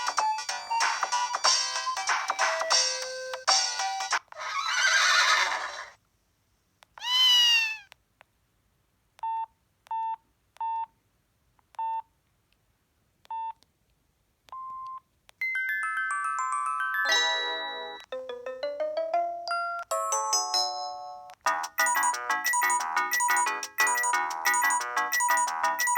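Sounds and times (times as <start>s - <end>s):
chiming melody: 15.4s - 25.9s
phone ringtones and alert sounds: 15.4s - 25.9s.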